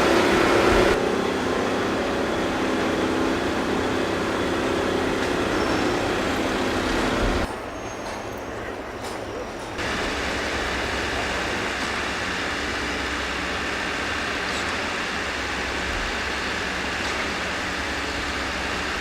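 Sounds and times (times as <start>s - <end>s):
vehicle noise: 0.0s - 7.5s.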